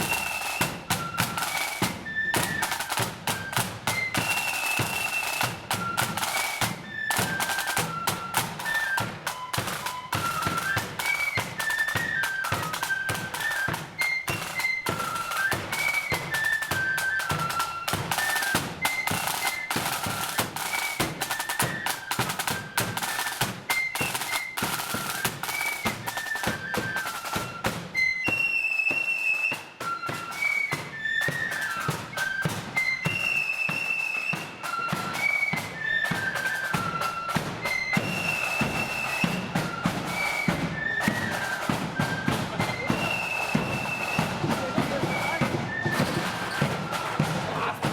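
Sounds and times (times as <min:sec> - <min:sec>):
flute melody: 0:00.0 - 0:47.9
snare drumming: 0:00.0 - 0:47.9.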